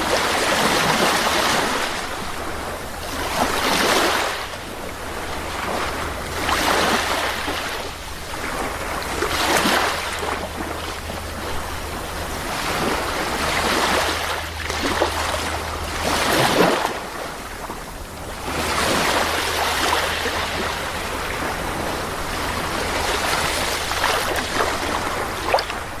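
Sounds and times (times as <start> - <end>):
sea waves breaking: 0.0 - 26.0.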